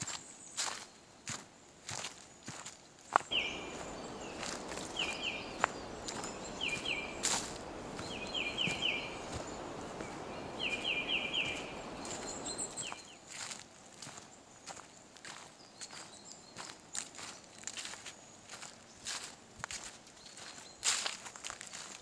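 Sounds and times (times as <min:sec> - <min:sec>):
steady background hiss: 0:03.3 - 0:12.9
bird calling falling notes: 0:03.3 - 0:13.0.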